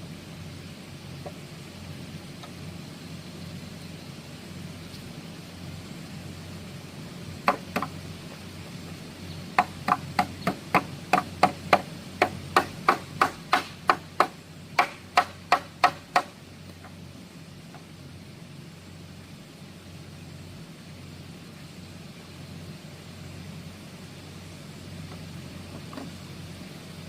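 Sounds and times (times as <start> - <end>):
hand tool sharp blows: 9.6 - 16.4.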